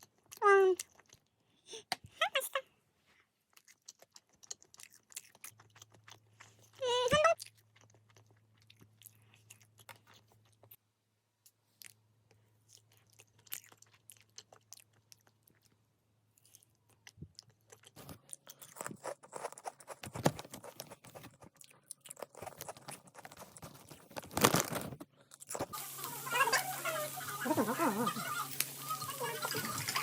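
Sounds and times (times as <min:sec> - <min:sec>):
person chewing and crunching: 0:00.0 - 0:01.5, 0:03.3 - 0:10.8, 0:11.4 - 0:25.9.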